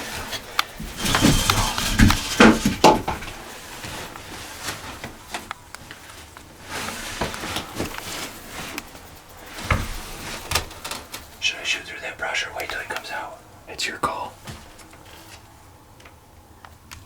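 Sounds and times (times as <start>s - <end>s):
rustling of gear: 0.0s - 11.4s.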